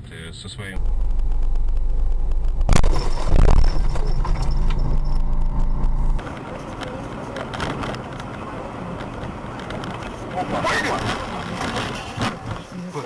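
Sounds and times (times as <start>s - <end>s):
low road rumble: 0.4s - 13.0s
loud crash: 0.8s - 6.2s
steady droning tone: 0.8s - 7.4s.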